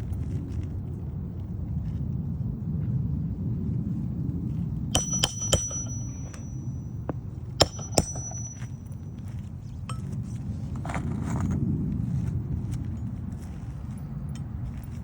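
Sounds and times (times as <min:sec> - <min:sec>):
hammer striking metal ringing: 0:04.9 - 0:10.1.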